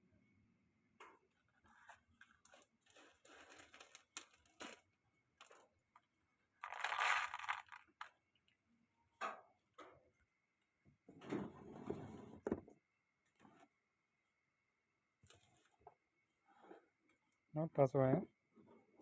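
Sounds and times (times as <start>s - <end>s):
crinkling rustles: 1.3s - 8.2s.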